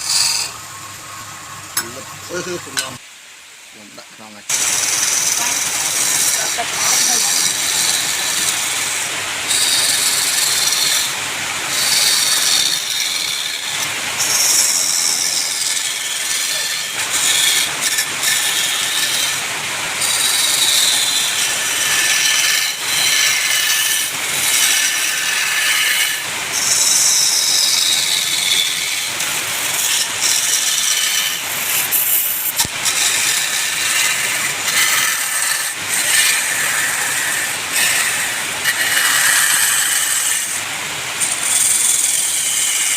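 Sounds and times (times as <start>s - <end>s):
lathe tool scraping wood: 0.0s - 3.0s, 4.5s - 42.9s.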